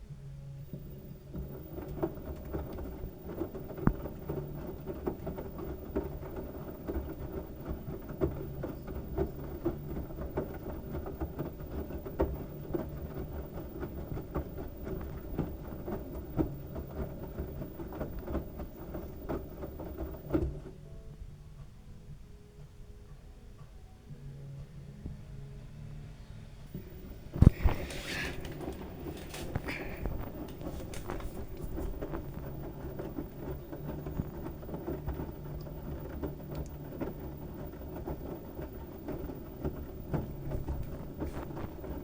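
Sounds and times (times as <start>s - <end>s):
washing machine motor hum: 0.0s - 42.0s
small thuds in washing machine: 0.8s - 20.7s
water sloshing and pattering: 26.7s - 42.0s.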